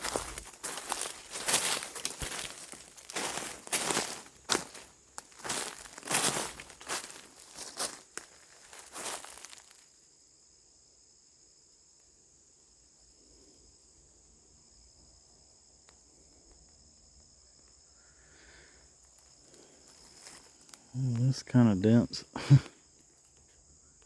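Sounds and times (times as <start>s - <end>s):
footsteps crunching through dry leaves: 0.0s - 9.8s, 19.8s - 20.9s
high-pitched insect drone: 0.0s - 10.5s.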